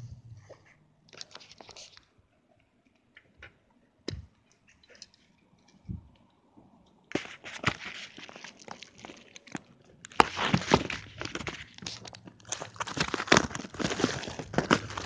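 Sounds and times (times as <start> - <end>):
packaging crinkling: 7.1 - 15.0.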